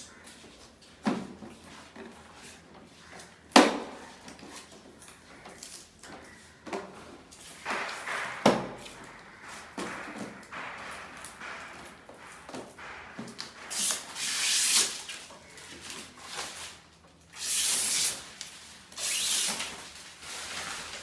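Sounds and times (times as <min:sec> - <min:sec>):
rustling or scraping: 0:06.3 - 0:17.1, 0:17.8 - 0:21.0
hard objects knocking: 0:06.6 - 0:15.3.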